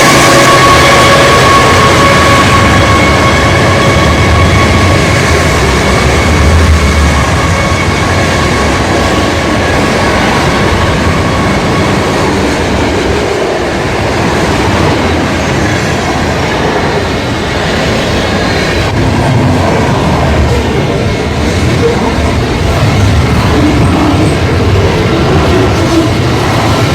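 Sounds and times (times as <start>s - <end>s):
high steady tones: 0.0s - 13.2s
freight train wheels clattering: 0.0s - 26.9s.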